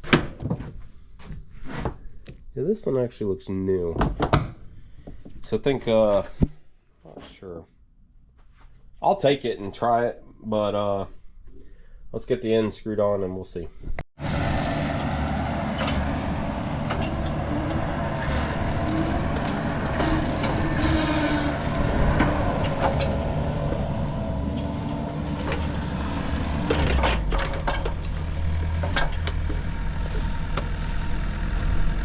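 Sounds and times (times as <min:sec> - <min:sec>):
excavator engine running: 0:14.2 - 0:32.0.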